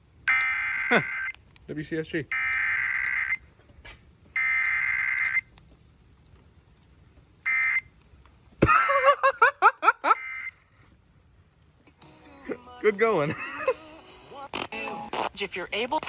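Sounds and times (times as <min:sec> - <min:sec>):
warbling digital data tones: 0:00.3 - 0:01.4.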